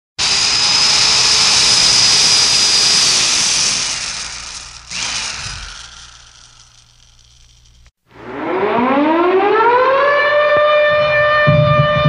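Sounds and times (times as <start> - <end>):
electric drill whining: 0.2 - 7.9.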